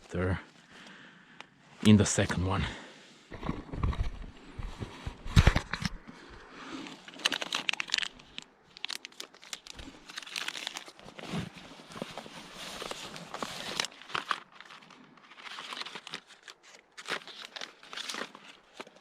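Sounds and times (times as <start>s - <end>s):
rustling and crunching: 3.3s - 19.0s
crackles: 5.4s - 19.0s.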